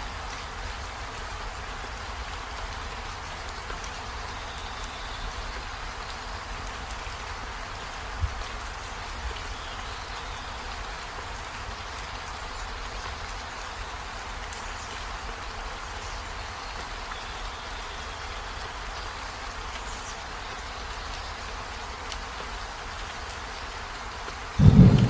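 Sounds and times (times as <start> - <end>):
steady rainfall: 0.0 - 25.0
low rumble: 24.6 - 25.0.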